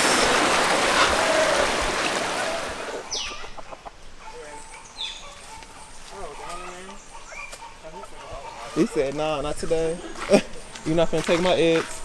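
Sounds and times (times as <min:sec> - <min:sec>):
stream water rushing: 0:00.0 - 0:03.3
chicken clucking and squawking: 0:00.8 - 0:09.1.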